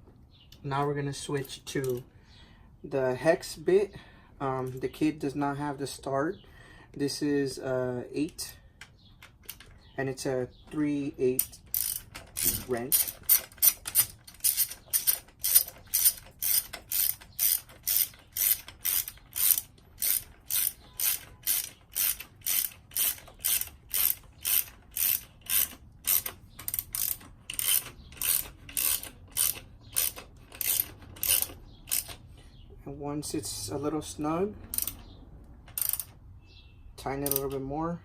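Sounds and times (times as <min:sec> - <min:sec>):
ratchet clicking: 0:08.3 - 0:09.7, 0:11.3 - 0:32.2, 0:34.7 - 0:35.1, 0:35.7 - 0:36.2, 0:37.1 - 0:37.6.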